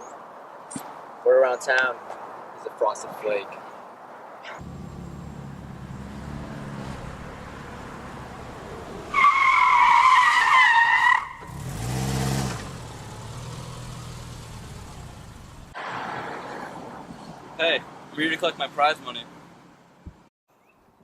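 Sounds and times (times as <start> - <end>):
car engine running: 4.6 - 8.6, 11.7 - 15.8
engine revving: 4.6 - 9.2, 11.4 - 15.8
tyre squeal: 9.1 - 11.6.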